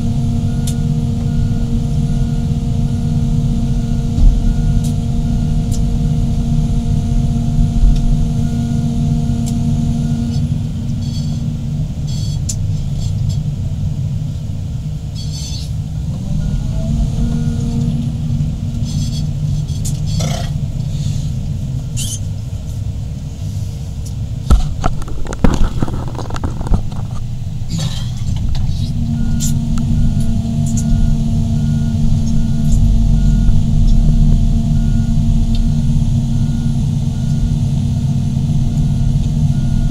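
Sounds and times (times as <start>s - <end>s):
excavator diesel engines: 0.0s - 39.9s
faint steady beeping: 7.0s - 13.1s, 29.1s - 39.9s.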